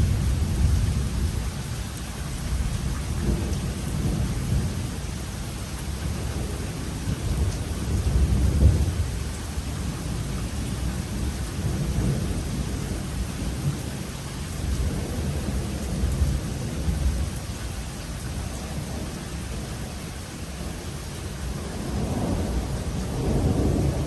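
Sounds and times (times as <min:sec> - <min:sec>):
steady rain: 0:00.0 - 0:24.0
thunder rumbling: 0:06.0 - 0:09.4, 0:21.4 - 0:24.0.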